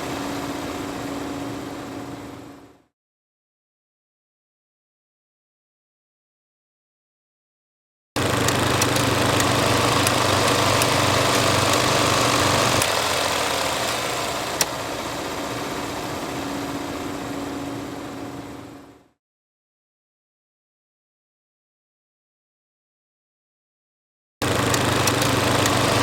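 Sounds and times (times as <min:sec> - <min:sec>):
film projector whirring: 0:00.0 - 0:02.8, 0:08.2 - 0:19.0, 0:24.4 - 0:26.0
sharp projector clicks: 0:08.2 - 0:14.8, 0:24.4 - 0:26.0.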